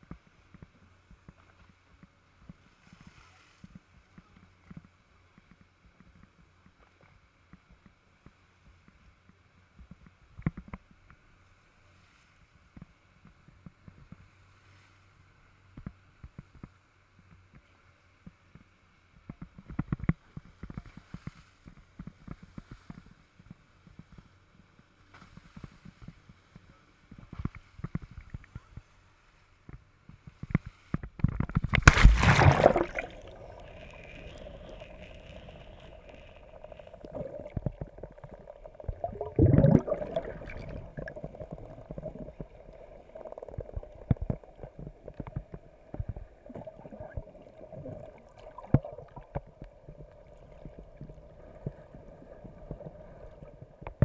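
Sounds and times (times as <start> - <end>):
water gurgling and popping: 31.3 - 54.0
rush of water: 31.4 - 54.0.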